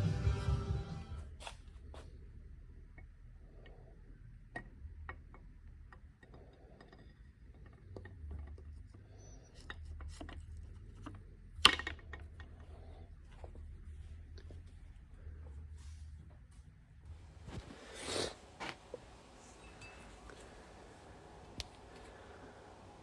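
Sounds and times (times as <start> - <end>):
low hum: 0.0 - 17.8.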